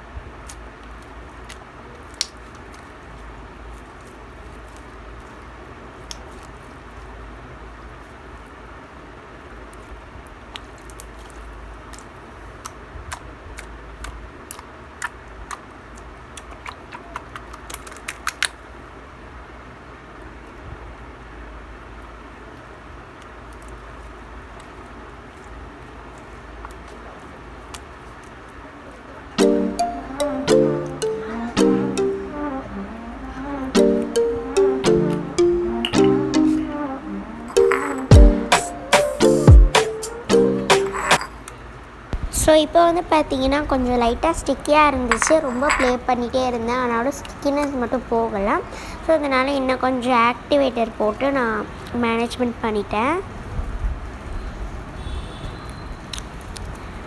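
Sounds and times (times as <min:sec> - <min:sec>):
slime squishing: 0:10.5 - 0:18.5
music: 0:29.4 - 0:41.2.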